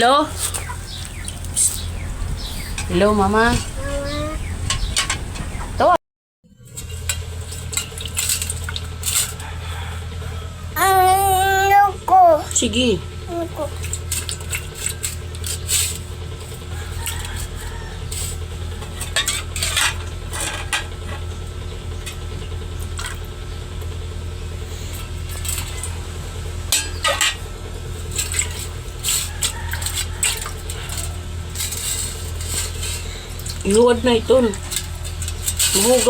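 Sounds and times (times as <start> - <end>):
steady low hum: 0.0 - 6.0
metal pots and spoons clattering: 16.9 - 21.3, 28.1 - 33.8, 34.4 - 36.0.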